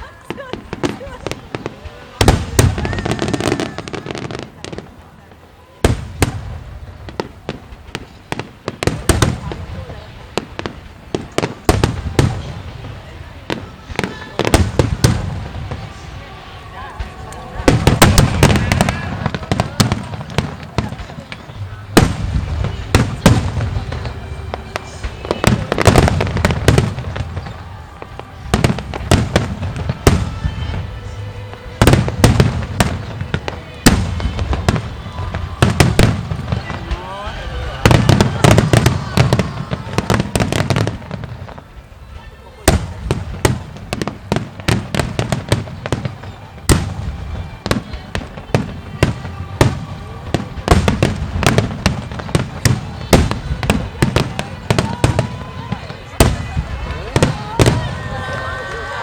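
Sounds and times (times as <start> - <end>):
fireworks booming: 0.0 - 59.0.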